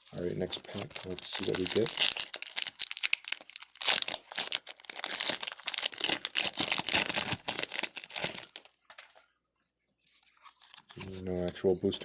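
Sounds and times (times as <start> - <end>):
foil wrapper crinkling and tearing: 0.0 - 9.2.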